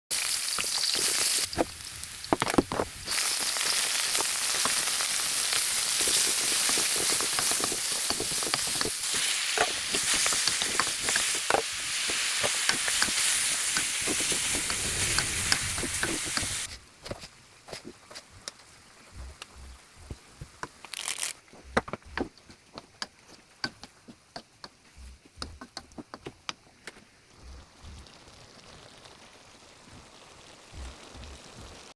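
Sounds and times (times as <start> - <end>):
food sizzling in hot oil: 0.1 - 16.8, 27.3 - 31.9
faint clicks and taps: 21.6 - 27.1.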